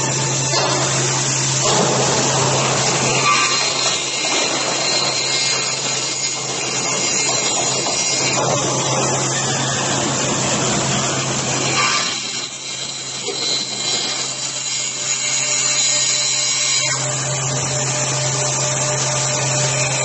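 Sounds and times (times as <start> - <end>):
cutting saw hissing and humming: 0.0 - 20.0.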